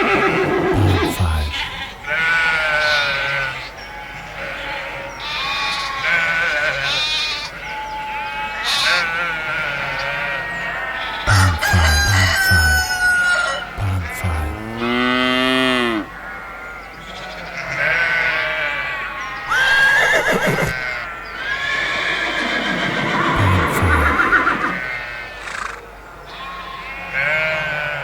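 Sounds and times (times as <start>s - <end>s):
rooster crowing: 11.3s - 13.7s.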